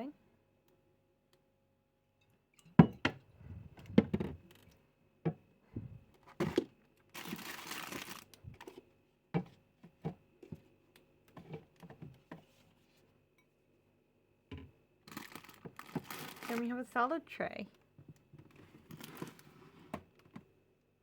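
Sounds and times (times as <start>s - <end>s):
plastic packaging rustling: 7.1s - 8.7s, 15.1s - 16.8s, 18.8s - 19.6s.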